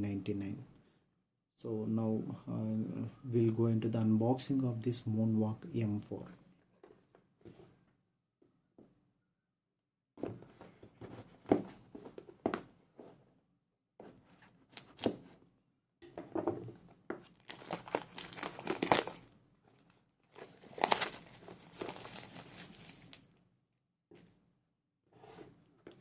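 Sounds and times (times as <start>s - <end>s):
packaging crinkling and tearing: 17.3s - 19.4s, 20.2s - 23.3s.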